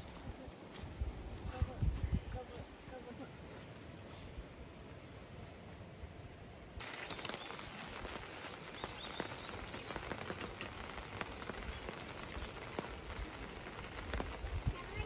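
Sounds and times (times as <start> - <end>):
bird chirping: 6.8 - 15.0
rain drops pattering: 6.8 - 15.0.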